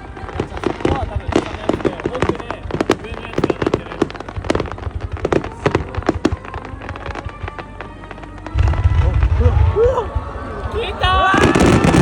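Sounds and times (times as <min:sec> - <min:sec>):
fireworks crackling pops: 0:00.0 - 0:10.7, 0:11.3 - 0:12.0
firework shell booming: 0:08.5 - 0:10.4.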